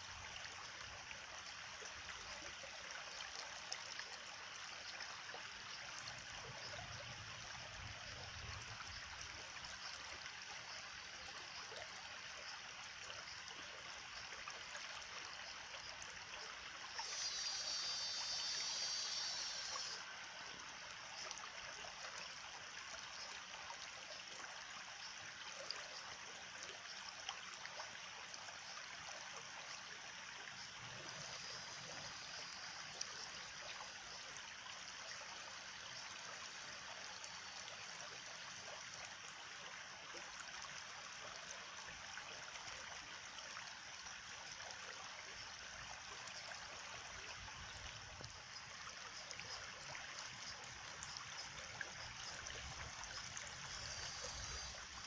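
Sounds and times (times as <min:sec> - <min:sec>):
small stream trickling: 0:00.0 - 0:55.0
faint ticks: 0:17.0 - 0:20.2.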